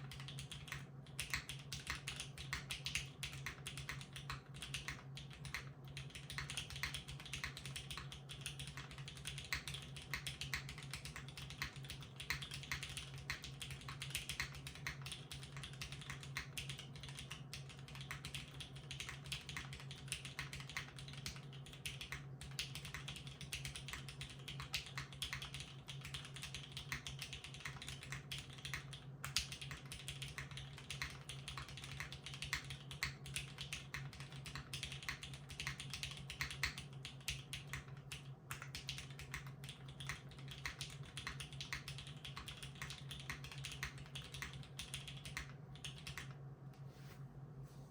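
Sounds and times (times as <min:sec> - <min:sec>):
mechanical keyboard typing: 0:00.0 - 0:46.4.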